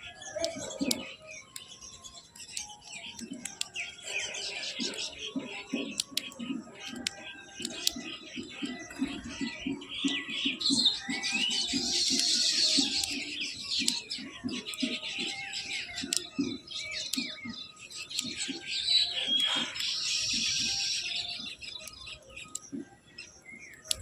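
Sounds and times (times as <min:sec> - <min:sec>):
birds chirping and chattering: 0:00.0 - 0:24.0.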